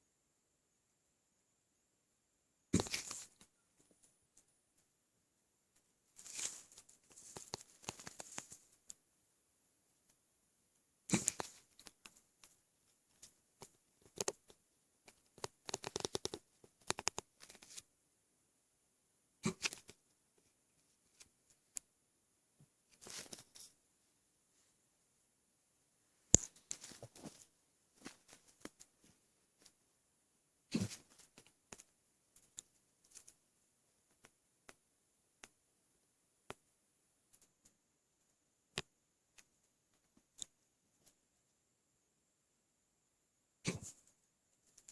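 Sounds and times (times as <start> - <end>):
stomach gurgling pops and clicks: 13.6 - 17.7.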